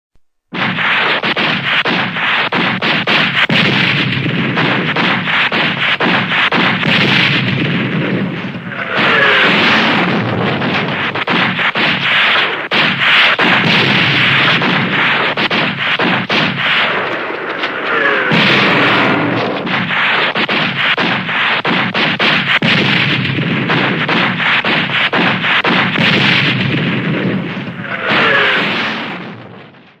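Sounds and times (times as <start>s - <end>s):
pistol gunshots barrage: 0.5s - 30.0s
short gliding whines: 8.3s - 13.6s, 16.6s - 21.6s.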